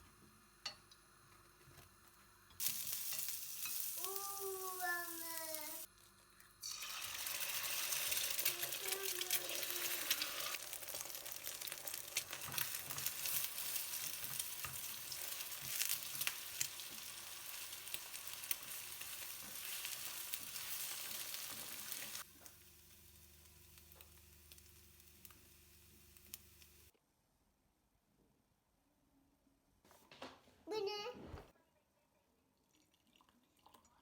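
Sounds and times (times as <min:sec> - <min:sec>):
food sizzling in a pan: 0:00.2 - 0:06.0, 0:06.6 - 0:26.9
stirring in a pan: 0:06.8 - 0:22.6.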